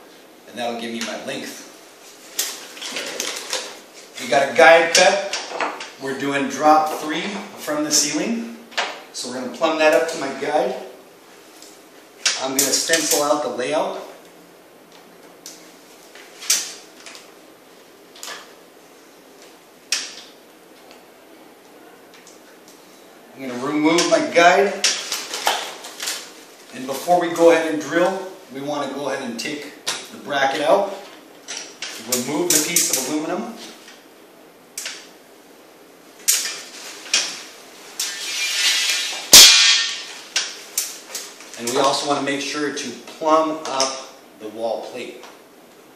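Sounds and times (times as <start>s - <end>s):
metal bar scraping: 38.0s - 40.2s
loud metal clank: 38.1s - 40.2s.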